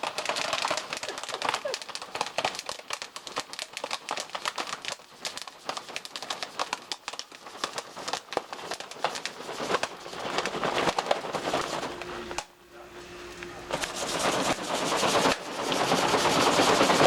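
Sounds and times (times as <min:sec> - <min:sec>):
popcorn kernels popping: 0:00.0 - 0:12.6.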